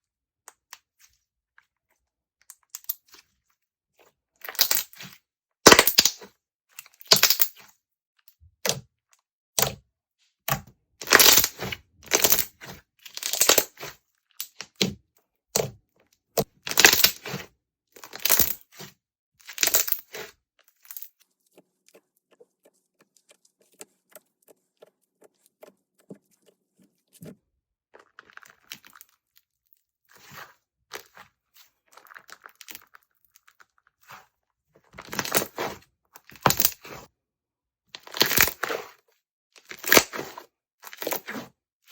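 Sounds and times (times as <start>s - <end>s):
slime crackling and popping: 5.7s - 6.2s.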